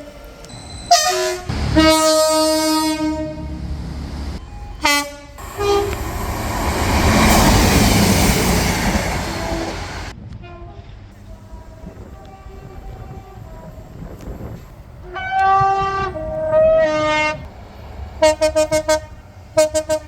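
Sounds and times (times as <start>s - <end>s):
train passing rumble: 0.0s - 20.0s
train horn: 0.9s - 3.7s, 4.6s - 14.1s, 15.0s - 17.5s, 18.2s - 20.0s.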